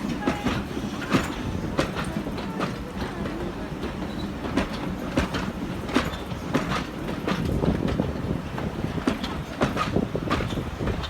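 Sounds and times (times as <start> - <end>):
train rumbling: 0.0 - 11.0.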